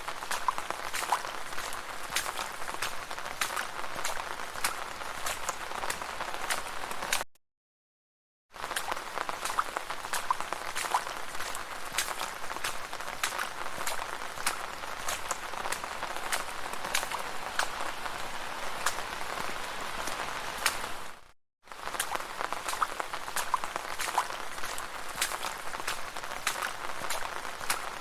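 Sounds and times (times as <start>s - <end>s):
rain falling on a street: 0.0s - 7.2s, 8.6s - 28.0s.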